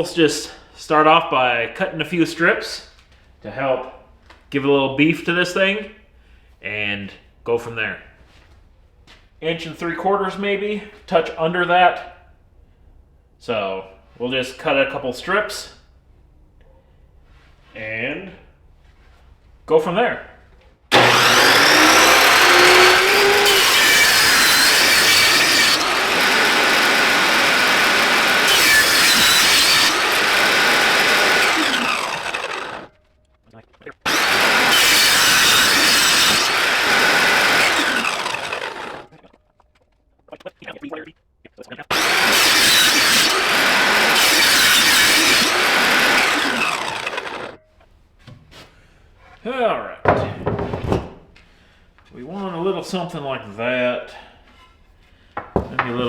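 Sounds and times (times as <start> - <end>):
power saw cutting wood: 20.9 - 33.0, 34.0 - 39.2, 41.9 - 47.6.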